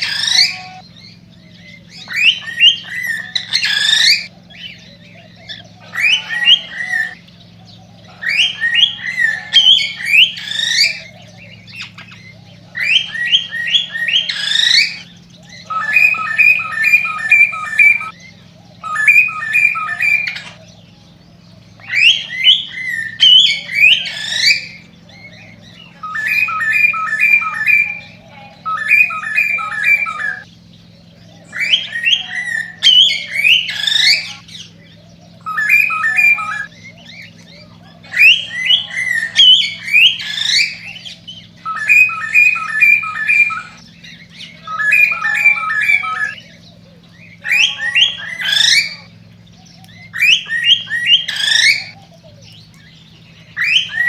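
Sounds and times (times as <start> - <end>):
cockatiel chirping and whistling: 0.0 - 0.9, 2.0 - 4.3, 12.8 - 15.1, 15.7 - 18.2, 18.8 - 20.6, 21.8 - 24.8, 26.0 - 30.5, 35.4 - 37.5, 38.1 - 46.4, 50.1 - 52.0, 53.6 - 54.0
steady low hum: 0.0 - 54.0.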